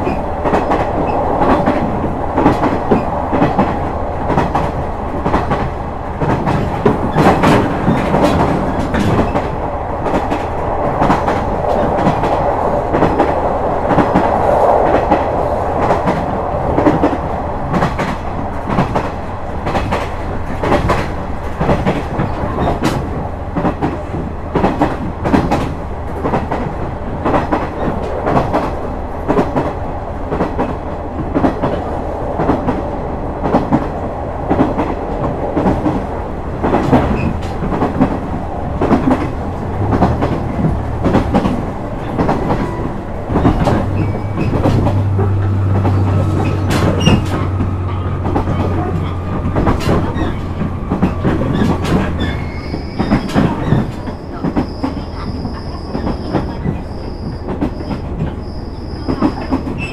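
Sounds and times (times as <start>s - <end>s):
wheels clicking over rail joints: 0.0s - 14.3s, 36.6s - 59.9s
diesel railcar running: 0.0s - 59.9s.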